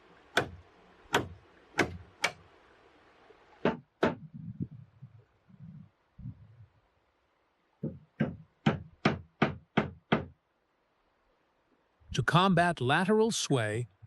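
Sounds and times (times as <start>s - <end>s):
wooden peg hammered knocks: 0.4s - 2.4s, 3.6s - 4.3s, 7.8s - 10.3s.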